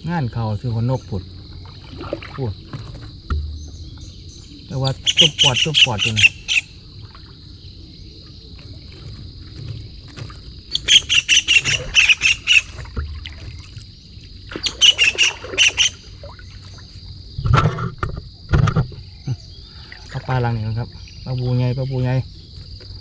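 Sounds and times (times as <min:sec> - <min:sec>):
high-pitched insect drone: 0:03.3 - 0:09.4
bird harsh rapid calls: 0:04.7 - 0:06.8, 0:10.7 - 0:12.8, 0:14.5 - 0:16.1.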